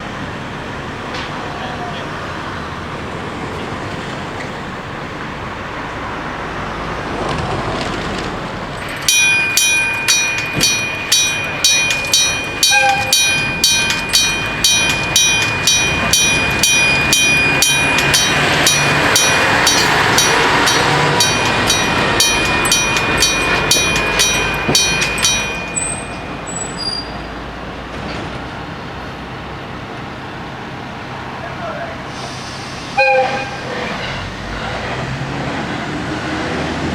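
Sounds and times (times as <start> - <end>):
freight train rumble: 0.0 - 36.9
level-crossing warning bell ringing: 8.8 - 27.9, 32.9 - 35.1.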